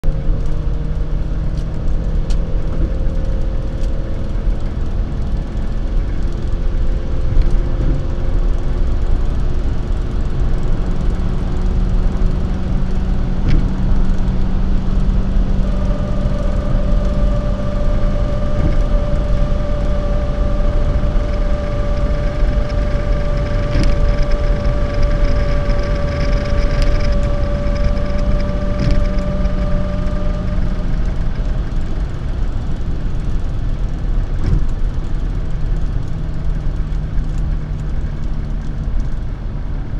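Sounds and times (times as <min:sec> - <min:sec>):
high-pitched whine: 0:00.0 - 0:39.9
road and engine rumble in car cabin: 0:00.0 - 0:39.9.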